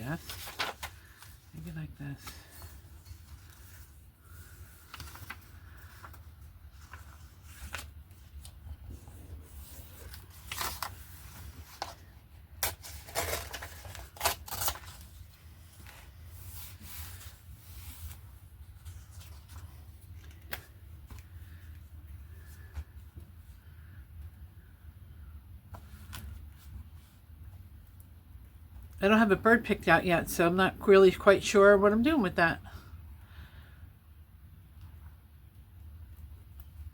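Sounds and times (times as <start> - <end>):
paper rustling: 0.0 - 24.0.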